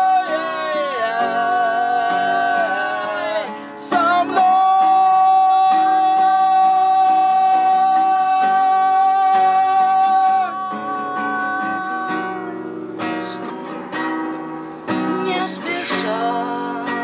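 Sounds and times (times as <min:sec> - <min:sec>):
person singing a long note: 0:00.0 - 0:13.5
strummed guitar: 0:00.0 - 0:17.0.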